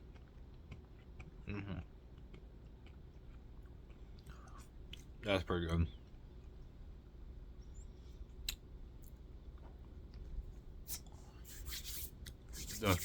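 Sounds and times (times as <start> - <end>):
chewing crunchy chocolate bar: 0.0 - 5.2.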